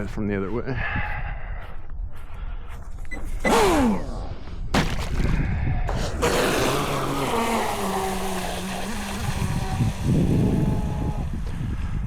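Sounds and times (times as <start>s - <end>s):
electric motor whining: 6.0s - 11.7s.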